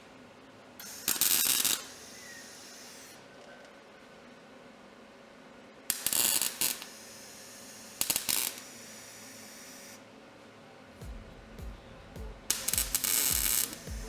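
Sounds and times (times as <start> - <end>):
welder arc crackling: 0.8 - 3.2, 5.9 - 10.0, 11.0 - 14.0.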